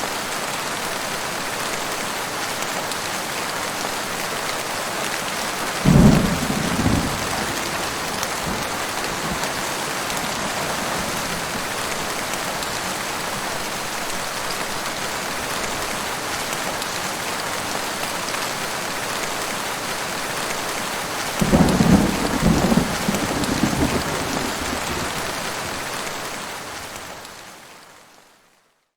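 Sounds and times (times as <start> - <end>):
heavy rain falling: 0.0 - 27.9
thunder rumbles: 5.8 - 12.8, 21.4 - 26.2.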